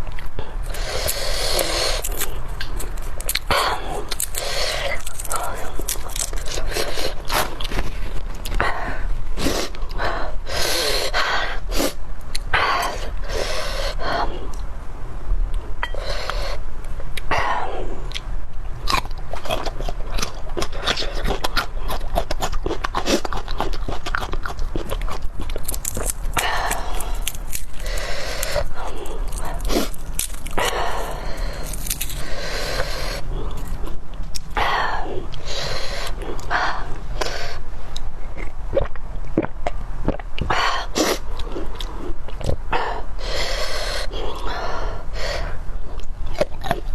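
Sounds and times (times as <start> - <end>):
person chewing wetly: 0.0 - 8.7, 18.1 - 46.9
sharp breaths: 0.4 - 15.0, 15.8 - 18.1, 26.0 - 33.8, 34.6 - 37.8, 42.7 - 45.8
person slurping food: 0.6 - 8.0, 25.8 - 33.8.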